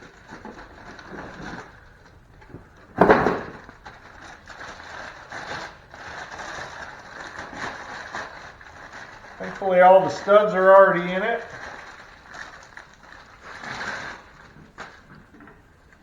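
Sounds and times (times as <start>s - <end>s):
packaging rustling and scraping: 0.2s - 10.0s.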